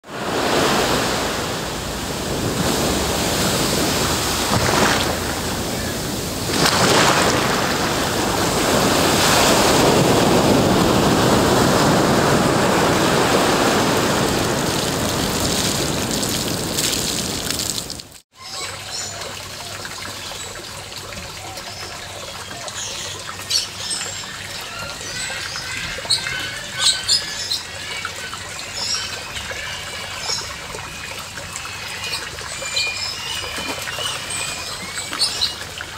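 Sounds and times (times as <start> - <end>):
ocean surf washing in: 0.0 - 17.7
trickle of running water: 14.3 - 35.9
birds chirping: 21.4 - 30.6, 31.6 - 35.8.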